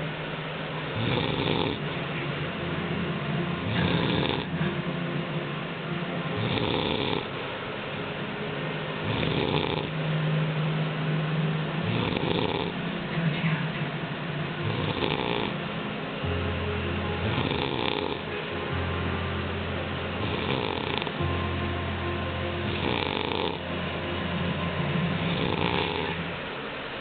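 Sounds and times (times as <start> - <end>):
man snoring: 0.9 - 1.8, 3.6 - 4.6, 6.4 - 7.3, 9.0 - 10.0, 11.8 - 12.8, 14.6 - 15.6, 17.2 - 18.3, 20.2 - 21.2, 22.7 - 23.6, 25.2 - 26.2.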